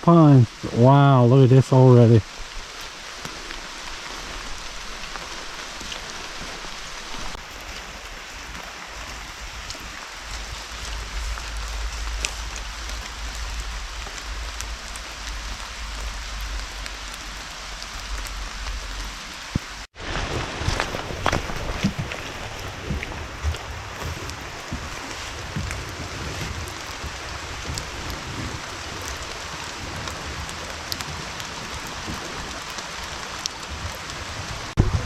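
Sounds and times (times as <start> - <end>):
rain falling through woods: 0.0 - 35.0.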